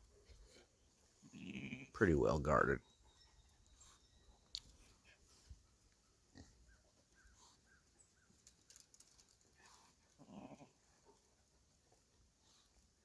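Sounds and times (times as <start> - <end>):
faint animal grunt: 1.2 - 2.0, 10.1 - 10.8.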